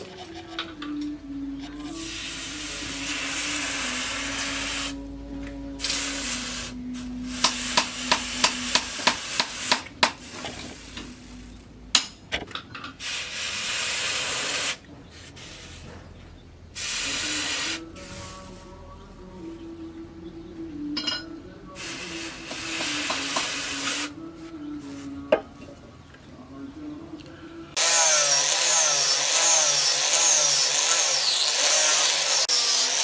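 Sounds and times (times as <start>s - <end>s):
hissing bursts: 1.8s - 5.1s, 5.8s - 11.4s, 13.0s - 15.8s, 16.8s - 18.6s, 21.8s - 24.2s
hammer striking metal: 7.4s - 10.3s, 11.9s - 12.2s, 22.5s - 23.6s.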